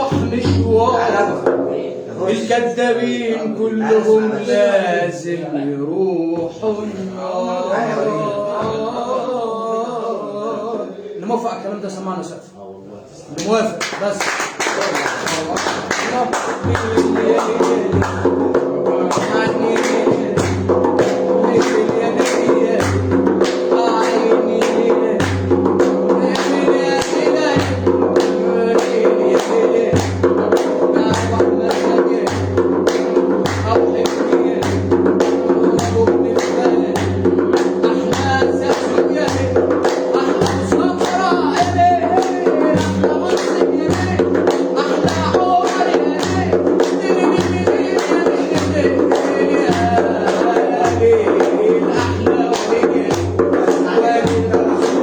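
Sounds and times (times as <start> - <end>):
fast hand percussion: 0.0 - 2.0, 13.8 - 55.0.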